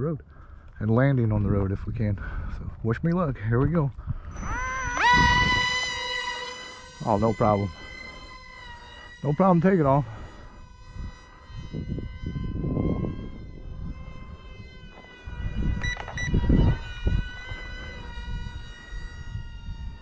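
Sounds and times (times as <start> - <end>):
wind buffeting microphone: 0.0 - 20.0
model plane motor whine: 4.1 - 20.0
sharp clicks: 15.8 - 16.3.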